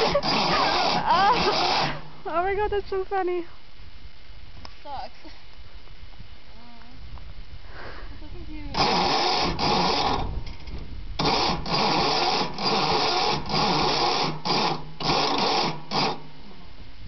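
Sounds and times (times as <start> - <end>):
lawnmower engine cranking: 0.0 - 2.1, 8.7 - 16.3
steady low hum: 0.0 - 17.0.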